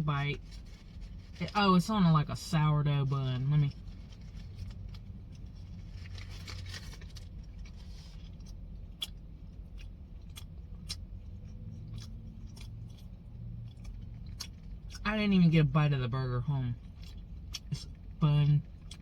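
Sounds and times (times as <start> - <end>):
rustling: 0.3 - 1.6, 3.2 - 8.5
person chewing food: 3.9 - 15.0, 16.8 - 19.0.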